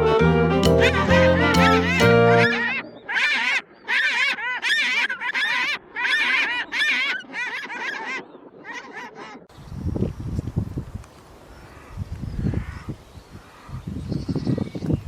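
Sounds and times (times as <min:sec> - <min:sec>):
high-pitched animal calls: 0:00.7 - 0:09.4.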